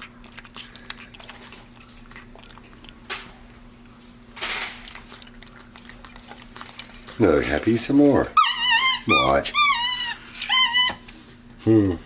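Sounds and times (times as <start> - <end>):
monkey slurping: 0.0 - 3.0, 4.8 - 11.2
monkey chewing wet smacks: 0.0 - 3.1, 4.8 - 7.8.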